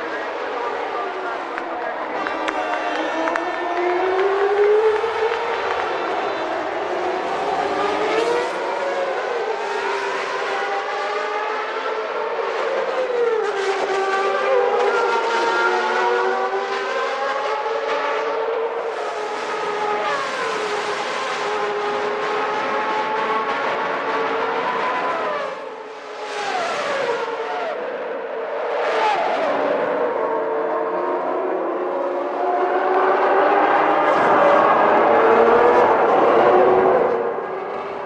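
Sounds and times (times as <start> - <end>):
race car engines revving high: 0.0 - 38.0.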